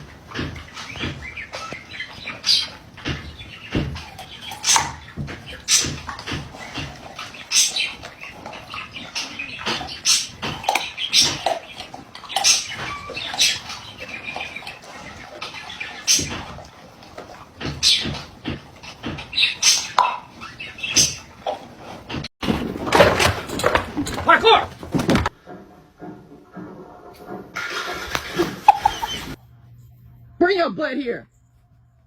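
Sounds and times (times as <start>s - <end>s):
dog squeaking and yelping: 28.4s - 29.4s.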